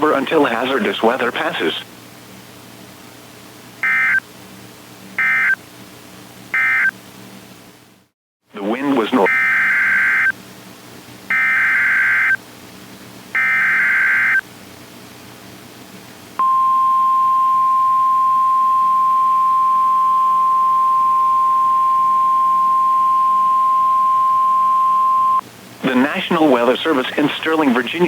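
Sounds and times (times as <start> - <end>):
steady alarm tone: 3.8 - 4.2, 5.2 - 5.6, 6.6 - 6.9, 9.2 - 10.4, 11.3 - 12.4, 13.4 - 14.4, 16.4 - 25.4
warbling digital data tones: 3.8 - 4.2, 5.2 - 5.6, 6.6 - 6.9, 9.2 - 10.3, 11.3 - 12.4, 13.4 - 14.4.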